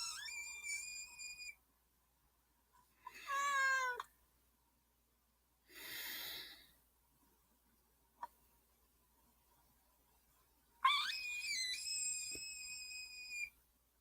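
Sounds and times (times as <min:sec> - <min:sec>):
animal's high wavering cry: 0:00.0 - 0:01.6, 0:10.8 - 0:13.5
breathy hiss: 0:05.6 - 0:06.8.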